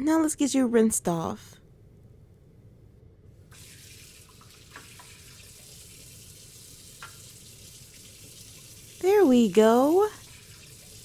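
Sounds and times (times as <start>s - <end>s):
water running from a tap: 3.5s - 11.0s.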